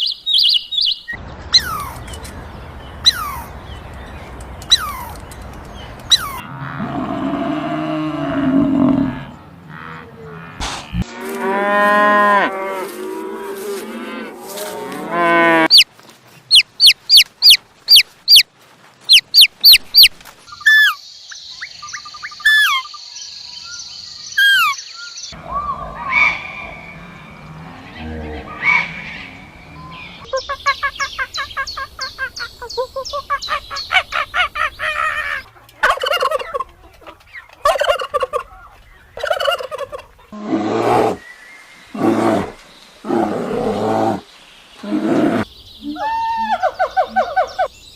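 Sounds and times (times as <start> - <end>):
sharp quick chirps: 19.1 - 21.0
whistled calls: 23.7 - 27.1.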